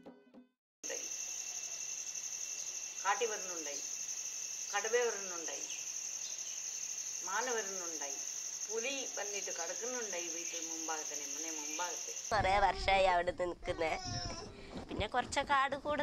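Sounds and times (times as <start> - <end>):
crickets chirping: 0.8 - 12.4.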